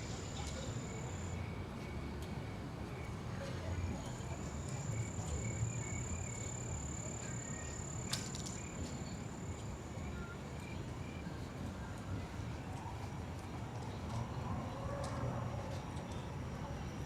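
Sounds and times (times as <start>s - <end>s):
high insect call: 0.0s - 1.4s
city traffic rumble: 0.0s - 17.0s.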